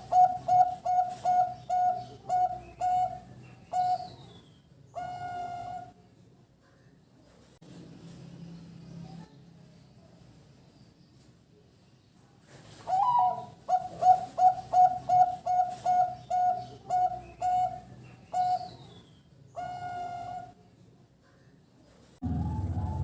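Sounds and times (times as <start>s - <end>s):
dove cooing: 0.0s - 4.2s, 12.9s - 18.8s, 19.6s - 20.5s, 22.2s - 23.0s.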